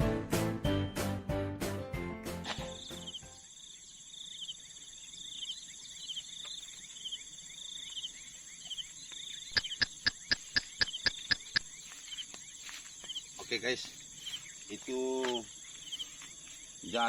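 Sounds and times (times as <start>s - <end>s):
music: 0.0s - 3.4s
crickets and insects trilling: 2.5s - 17.0s
rapid sharp clicks: 9.5s - 11.7s.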